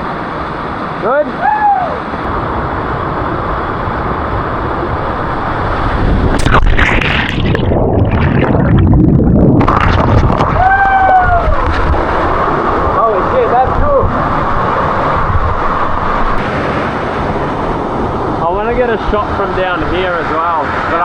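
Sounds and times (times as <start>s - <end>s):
person shouting: 1.4s - 2.0s, 10.6s - 11.6s
muffled churning underwater sound: 2.0s - 21.0s
body splashing into water: 6.3s - 10.9s.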